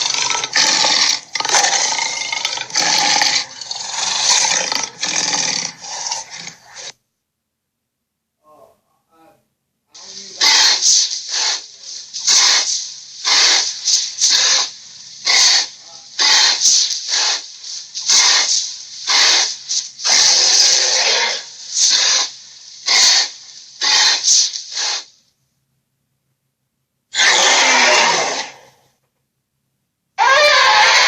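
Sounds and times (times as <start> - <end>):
breathy creature hisses: 0.0 - 6.9, 10.0 - 25.1, 27.2 - 28.8, 30.2 - 31.0.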